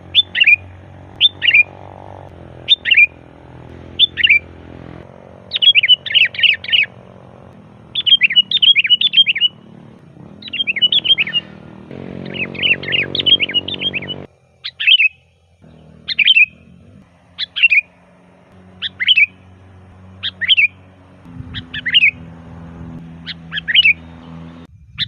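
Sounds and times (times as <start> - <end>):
bulbul calling: 0.0 - 24.7.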